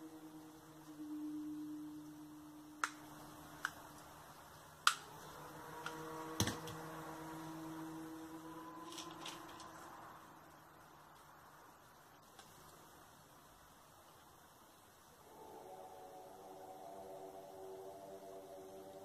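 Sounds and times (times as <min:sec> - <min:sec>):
low droning trumpet-like tone: 0:00.0 - 0:10.5, 0:15.2 - 0:19.0.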